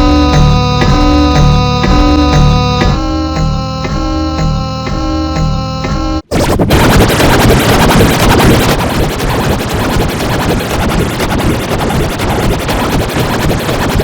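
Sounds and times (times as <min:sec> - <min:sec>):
harsh distorted digital noise: 0:06.3 - 0:14.0.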